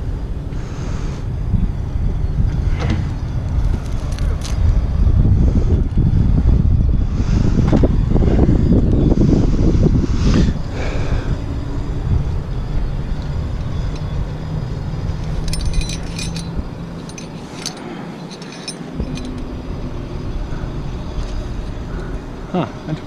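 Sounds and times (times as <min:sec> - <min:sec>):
metallic clinking: 0:12.9 - 0:19.8.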